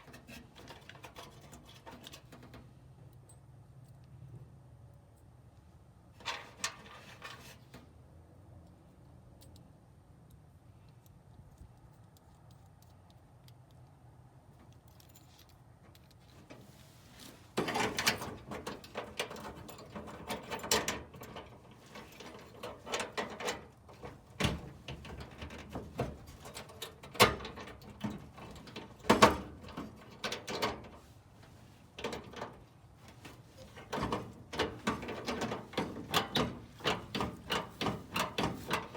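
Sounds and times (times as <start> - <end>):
tools and metal parts clattering: 0.0 - 4.1, 6.2 - 7.9, 14.6 - 16.8, 17.4 - 38.9.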